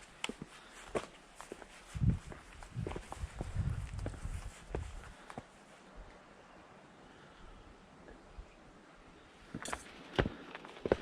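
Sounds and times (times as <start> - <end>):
footsteps on a trail: 0.0 - 5.6, 9.5 - 11.0.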